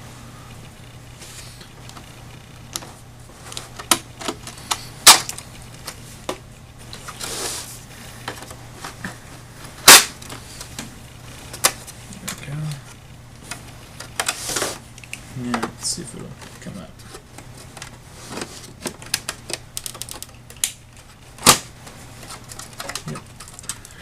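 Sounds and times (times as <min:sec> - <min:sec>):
loud plastic snaps: 0:03.8 - 0:06.4, 0:09.8 - 0:10.9, 0:18.8 - 0:21.7
scraping rustle: 0:06.9 - 0:09.4
plastic and metal parts clicking: 0:17.8 - 0:21.1, 0:22.5 - 0:23.9.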